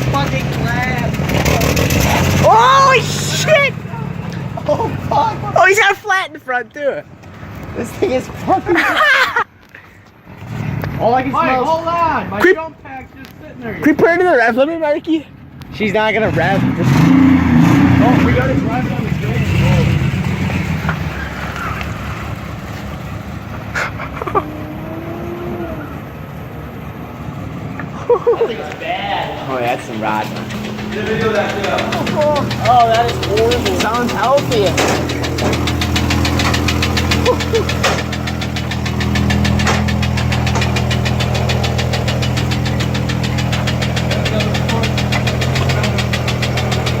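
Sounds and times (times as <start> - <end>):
engine running rough with knock: 0.0 - 5.5, 17.8 - 24.4, 29.4 - 47.0
sharp clack: 29.5 - 47.0.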